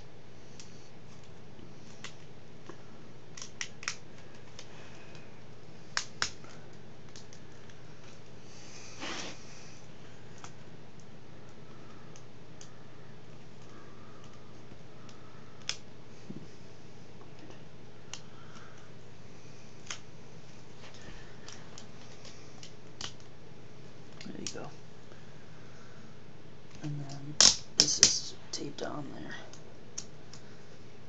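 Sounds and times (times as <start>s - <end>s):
plastic laptop parts clicking: 3.3s - 4.7s, 5.9s - 7.8s, 13.6s - 15.8s.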